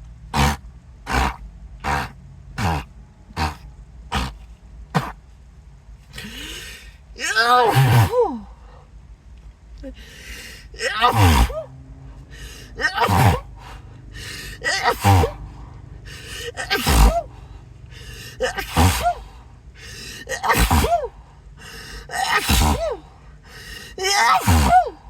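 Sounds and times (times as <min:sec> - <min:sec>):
person sneezing: 0:05.0 - 0:05.2, 0:06.1 - 0:08.5, 0:09.8 - 0:11.7, 0:12.5 - 0:25.0.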